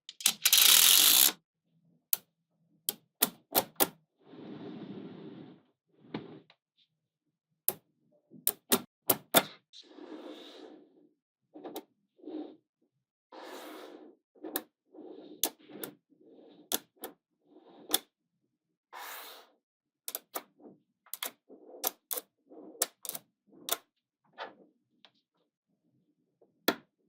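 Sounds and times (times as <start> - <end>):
balls rolling and scraping: 4.2 - 6.6, 9.4 - 12.7, 13.3 - 18.1, 20.4 - 25.2.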